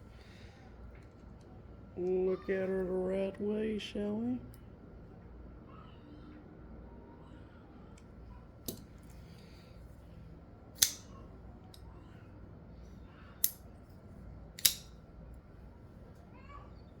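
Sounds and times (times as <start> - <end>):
folding knife clicks: 10.8 - 11.8, 13.4 - 13.7, 14.6 - 15.0.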